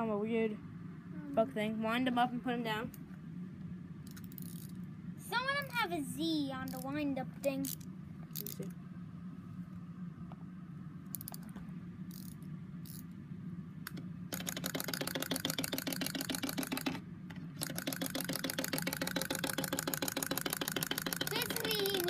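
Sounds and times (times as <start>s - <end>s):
clockwork toy clicking buzz: 14.3s - 17.0s, 17.6s - 22.0s.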